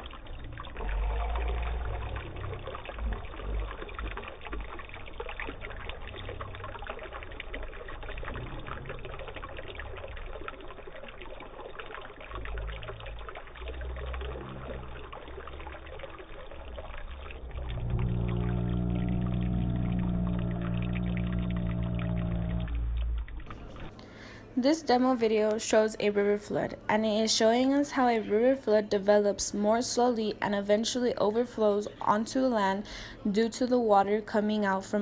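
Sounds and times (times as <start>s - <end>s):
water pouring and trickling: 0.0s - 35.0s
low bumps: 12.4s - 23.9s.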